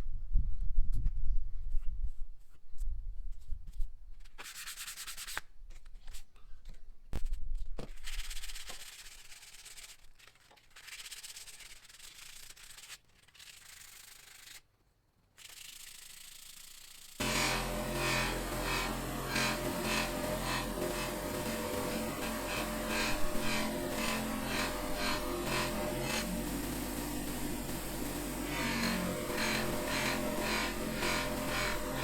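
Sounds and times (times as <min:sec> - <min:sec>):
sanding metal by hand: 0:08.0 - 0:14.6, 0:15.4 - 0:32.0
steady low hum: 0:17.2 - 0:32.0.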